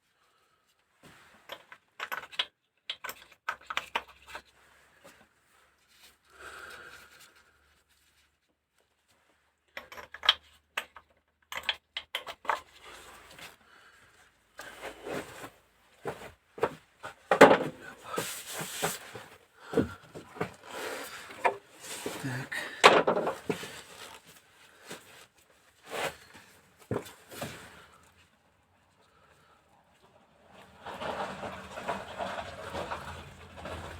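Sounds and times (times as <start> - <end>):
metal engine parts clicking and scraping: 30.6 - 33.9.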